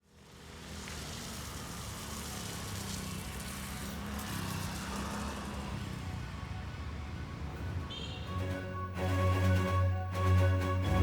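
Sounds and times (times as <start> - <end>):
outdoor background noise: 0.0 - 8.3.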